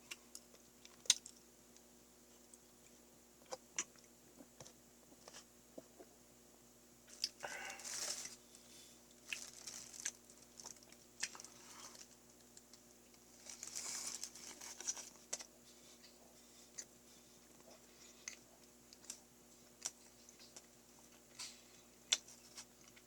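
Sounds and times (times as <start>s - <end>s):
eating clicks and smacks: 0.1s - 1.4s.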